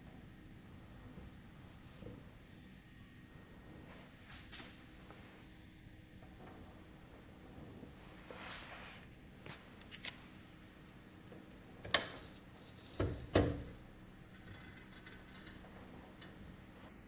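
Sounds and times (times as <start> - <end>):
servo mechanical clicks and clunks: 11.8 - 13.8.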